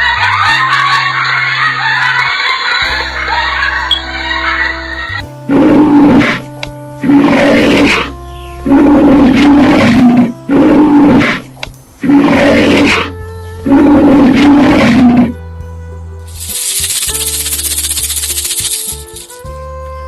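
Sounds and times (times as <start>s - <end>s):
big cat roaring: 5.4s - 15.4s.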